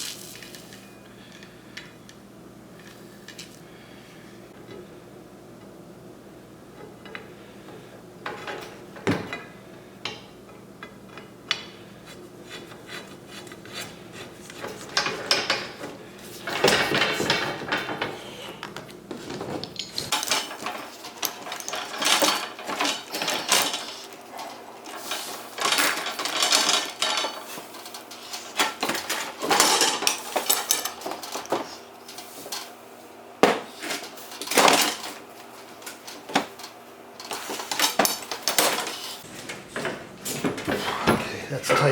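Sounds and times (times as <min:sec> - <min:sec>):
metal pipe fittings clanking: 0:19.5 - 0:32.7.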